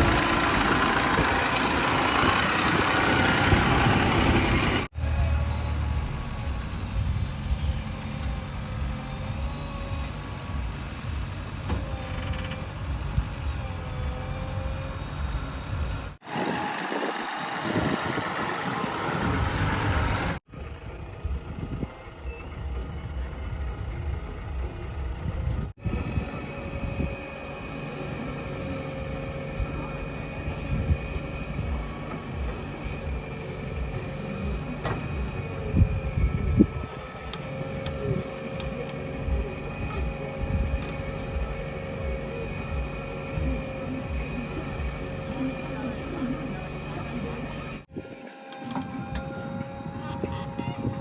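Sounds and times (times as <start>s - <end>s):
diesel digger engine under load: 0.0s - 51.0s
wavering high tone: 47.9s - 51.0s.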